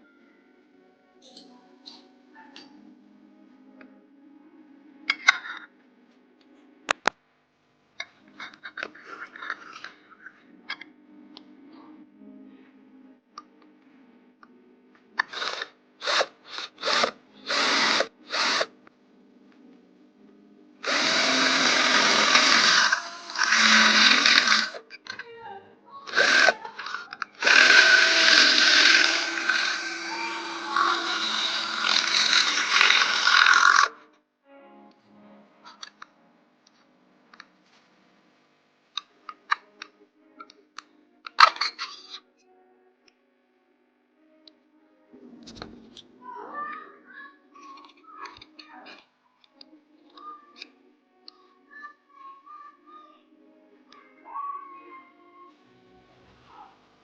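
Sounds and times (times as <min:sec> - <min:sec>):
small electric motor running: 0:15.2 - 0:18.7, 0:20.8 - 0:24.8, 0:26.1 - 0:34.0.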